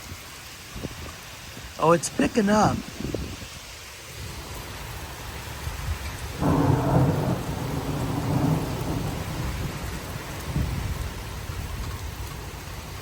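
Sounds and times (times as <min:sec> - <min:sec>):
heavy rain: 0:00.0 - 0:13.0
thunder rumbling: 0:05.6 - 0:13.0.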